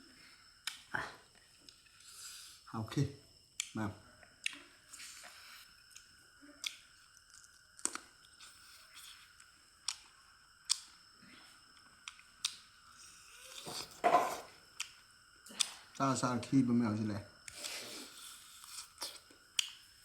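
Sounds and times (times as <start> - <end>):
wet mouth clicks and smacks: 0.6 - 0.9, 18.7 - 19.8
person chewing food: 4.4 - 11.0, 11.7 - 15.8, 17.5 - 19.8.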